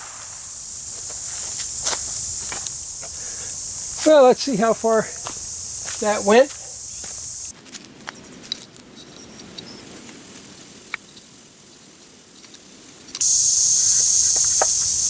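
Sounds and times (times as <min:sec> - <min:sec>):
crickets chirping: 0:00.0 - 0:15.0
rustling and handling noise: 0:07.5 - 0:10.4.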